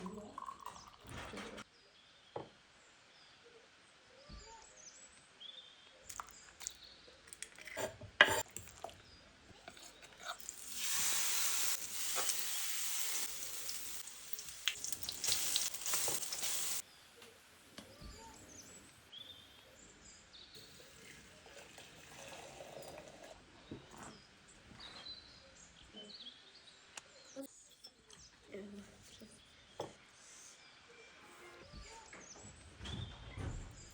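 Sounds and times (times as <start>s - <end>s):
food sizzling in a hot pan: 10.4s - 16.8s.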